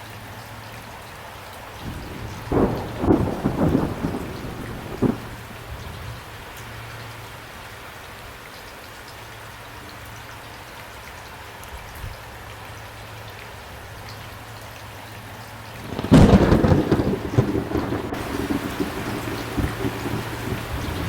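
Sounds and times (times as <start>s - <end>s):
steady rain falling: 0.0s - 21.0s
loud thunder crash: 1.8s - 5.7s, 15.8s - 21.0s.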